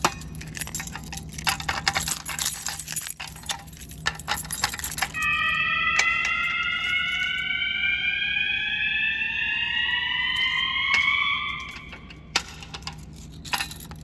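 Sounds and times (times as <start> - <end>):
alarm horn whoop tone: 4.8 - 13.1.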